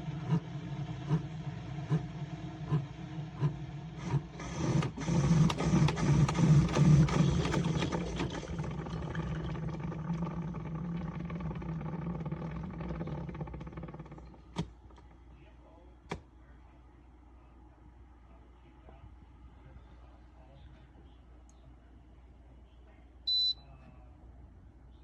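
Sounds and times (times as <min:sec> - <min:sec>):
coffee brewer pump hum: 0:00.0 - 0:16.7.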